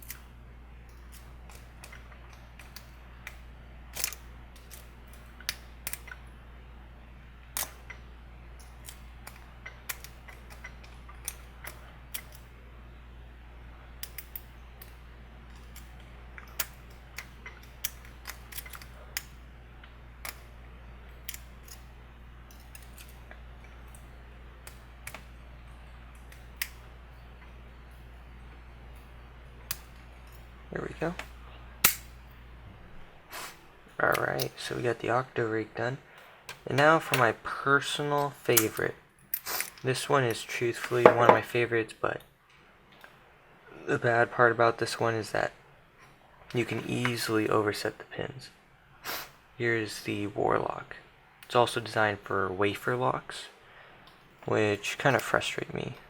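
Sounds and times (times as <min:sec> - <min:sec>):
steady low hum: 0:00.0 - 0:56.0
metal pick clicking and scraping: 0:00.9 - 0:06.2, 0:08.6 - 0:12.5, 0:14.0 - 0:19.4, 0:22.5 - 0:24.0.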